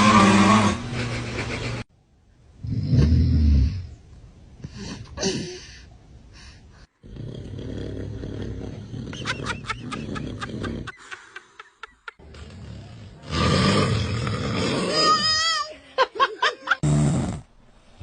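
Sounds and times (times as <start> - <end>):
snorts and breathing: 4.6 - 9.2, 12.2 - 14.9
man snoring: 7.0 - 10.9, 12.3 - 14.9.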